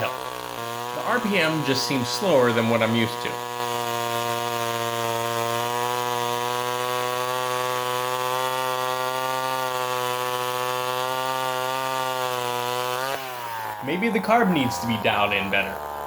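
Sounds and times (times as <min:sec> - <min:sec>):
chainsaw cutting wood: 0:00.0 - 0:16.0.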